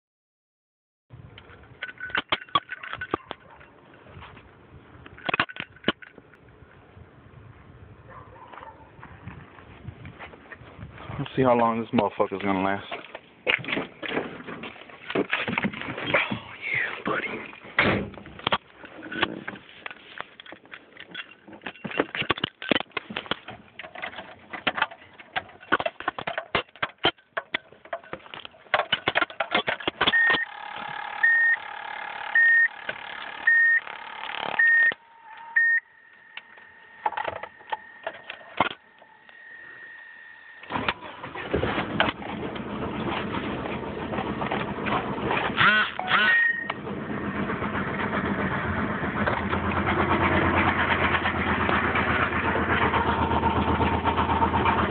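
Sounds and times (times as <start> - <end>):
handling clicks and knocks: 1.3 - 6.6, 11.2 - 16.5, 17.5 - 35.0
car engine cranking and running: 12.1 - 35.0, 36.3 - 54.9
car warning chime beeping: 30.1 - 30.5, 31.2 - 31.6, 32.4 - 32.8, 33.5 - 33.9, 34.6 - 37.0.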